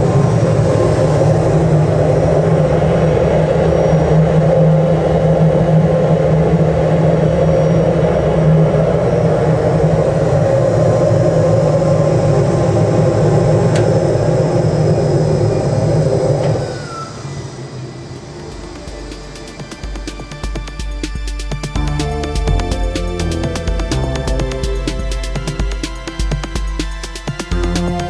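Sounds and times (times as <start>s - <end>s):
furnace burner and blower roar: 0.0s - 20.0s
low hum: 0.0s - 28.0s.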